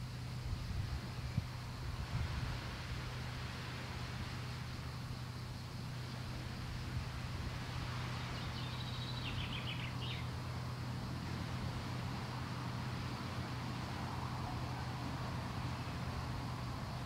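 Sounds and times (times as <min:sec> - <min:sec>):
low hum and hiss: 0:00.0 - 0:17.0
bird chirps: 0:08.4 - 0:10.3.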